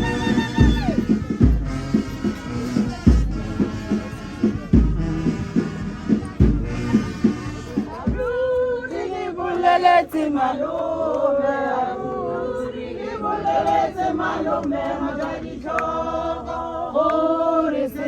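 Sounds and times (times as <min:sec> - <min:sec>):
music with heavy beat: 0:00.0 - 0:08.3
group of voices singing: 0:06.3 - 0:18.0.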